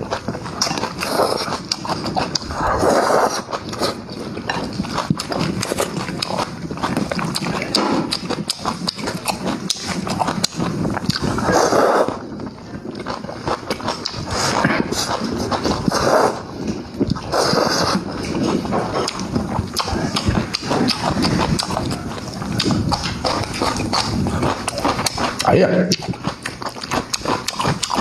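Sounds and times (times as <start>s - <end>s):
chewing and mouth smacking: 0.0s - 28.0s
noisy slurps: 0.0s - 28.0s.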